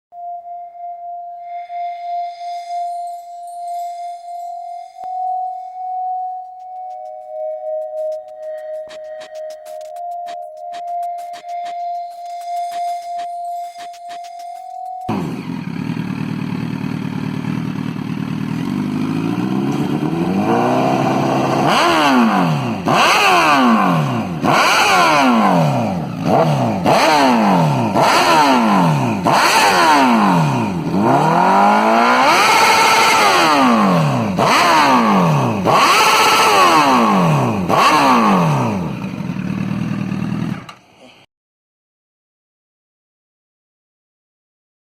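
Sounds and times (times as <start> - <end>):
motorcycle engine revving: 15.1 - 40.8.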